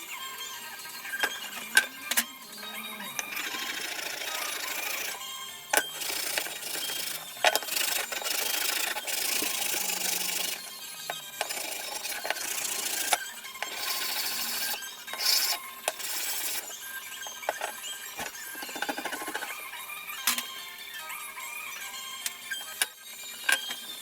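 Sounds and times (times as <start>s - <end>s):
background music: 0.0s - 24.0s.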